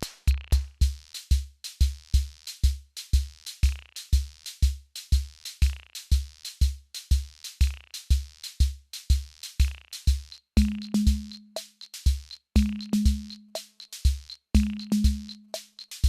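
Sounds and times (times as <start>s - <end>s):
hi-hat ticks: 0.0s - 16.0s
deep kick drum: 10.6s - 11.4s, 14.6s - 15.3s.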